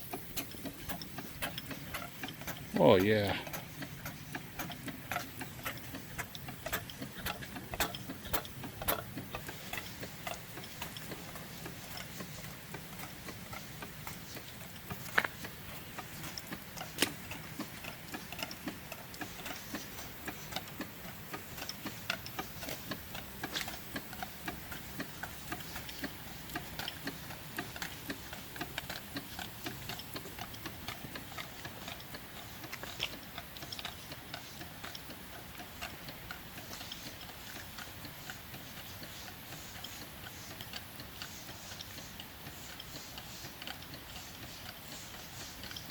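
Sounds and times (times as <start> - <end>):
model steam engine clicking: 0.0 - 45.9.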